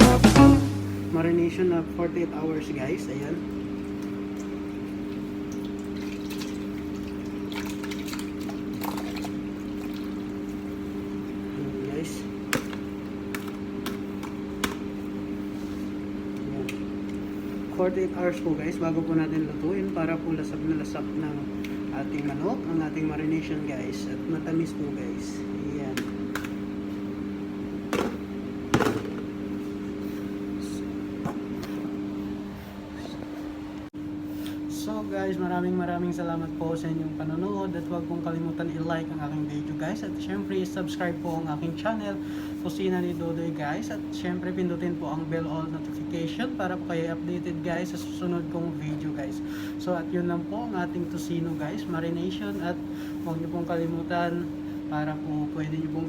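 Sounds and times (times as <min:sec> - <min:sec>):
low hum: 0:00.0 - 0:02.0
low electrical hum: 0:00.0 - 0:56.0
wet sloshing of marinade: 0:03.5 - 0:11.5.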